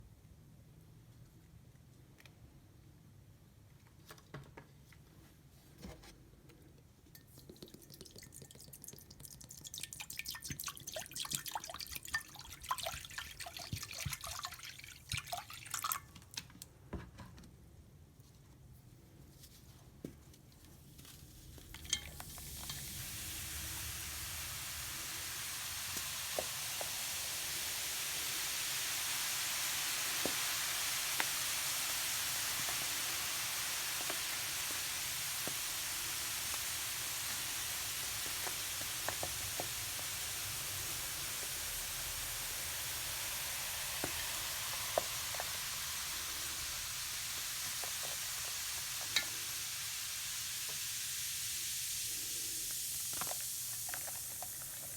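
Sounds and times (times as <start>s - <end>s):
baking soda fizzing in vinegar: 7.1s - 16.5s, 20.5s - 54.9s.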